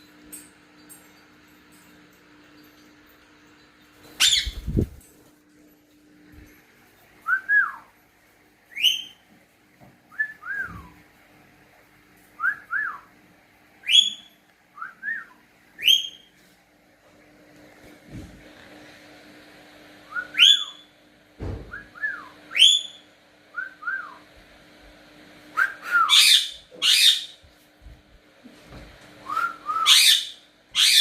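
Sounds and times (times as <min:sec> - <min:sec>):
parrot whistling: 0:04.2 - 0:04.6, 0:08.7 - 0:09.2, 0:13.8 - 0:16.3, 0:20.1 - 0:20.9, 0:21.8 - 0:23.0, 0:25.6 - 0:27.4, 0:29.3 - 0:31.0.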